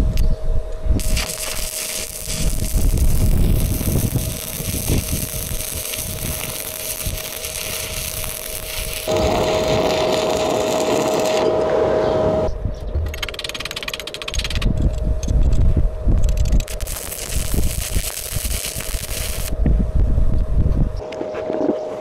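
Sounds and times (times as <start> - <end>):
wind rumble on microphone: 0.0 - 13.2, 14.4 - 21.8
welding arc crackling and hissing: 1.0 - 11.6, 16.2 - 19.6.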